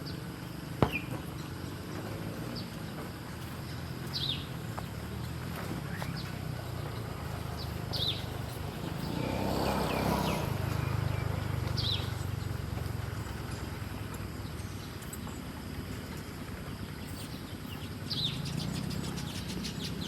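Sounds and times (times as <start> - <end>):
small bird chirping: 2.3 - 20.0.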